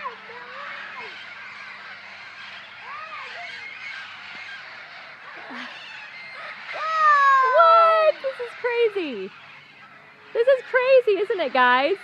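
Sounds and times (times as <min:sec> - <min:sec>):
parrots squawking: 0:00.0 - 0:12.0.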